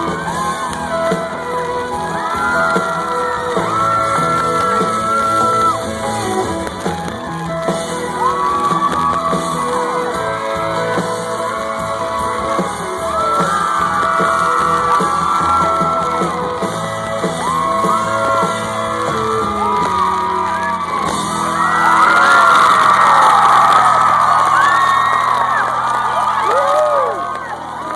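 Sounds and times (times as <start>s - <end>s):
audience whooping and yelling: 0.0s - 27.9s
live country band playing: 0.0s - 27.9s.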